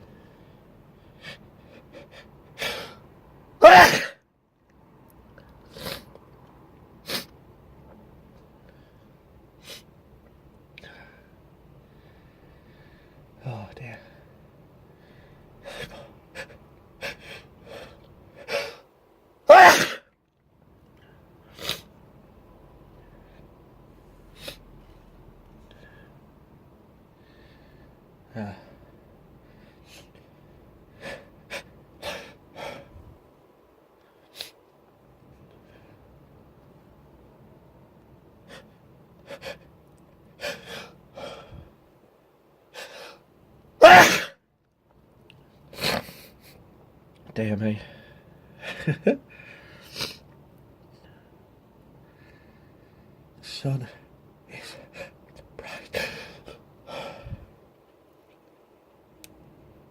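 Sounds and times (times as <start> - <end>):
person sneezing: 3.6 - 4.2, 19.5 - 20.1, 21.5 - 21.9, 43.8 - 44.4, 45.7 - 46.4, 49.8 - 50.2.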